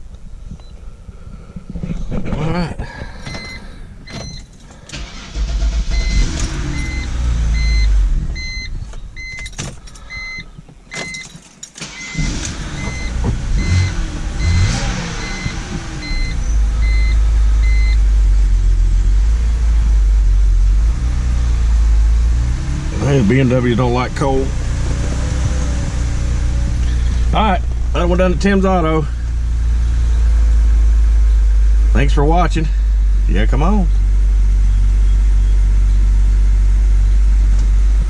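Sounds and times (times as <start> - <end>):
car engine running: 0.0 - 38.0
car warning chime beeping: 3.2 - 18.0.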